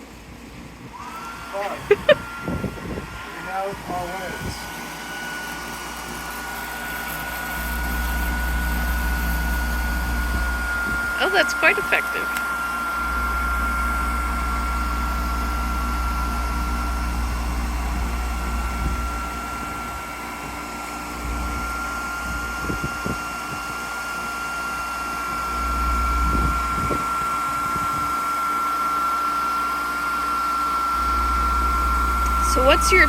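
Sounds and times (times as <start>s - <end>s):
electric blower whining: 0.0s - 33.0s
deep airflow rumble: 1.6s - 5.1s, 5.9s - 24.2s, 24.9s - 28.2s.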